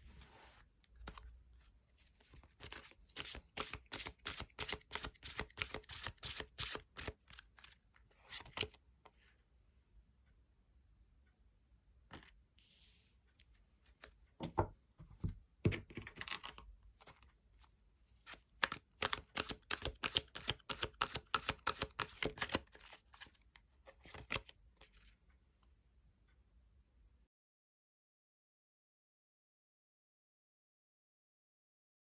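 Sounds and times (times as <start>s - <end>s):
cards shuffling clicks: 2.3s - 8.8s, 18.3s - 23.3s, 24.1s - 24.5s.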